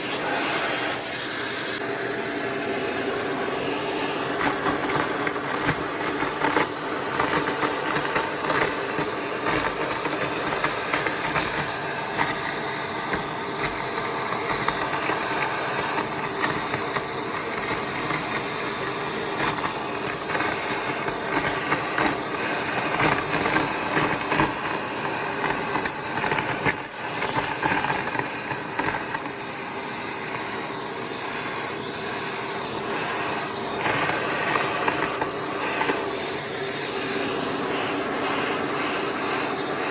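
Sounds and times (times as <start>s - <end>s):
vacuum cleaner motor whining: 0.0s - 39.9s.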